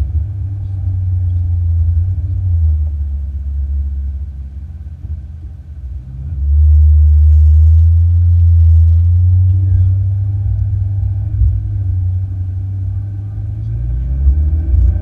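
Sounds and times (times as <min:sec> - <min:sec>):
car engine rumbling: 0:00.0 - 0:15.0
road noise: 0:00.0 - 0:15.0.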